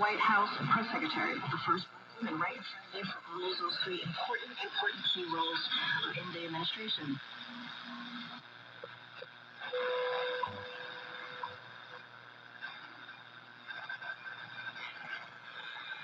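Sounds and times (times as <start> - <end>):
radio static hiss: 0.0 - 16.0
steady whistle: 9.7 - 11.6.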